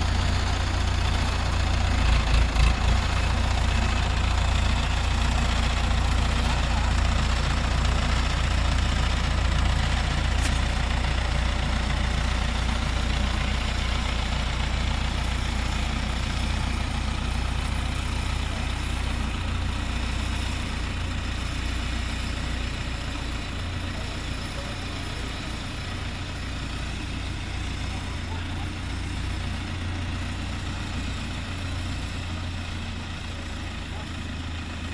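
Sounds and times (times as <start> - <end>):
heavy vehicle engine idling: 0.0 - 34.9.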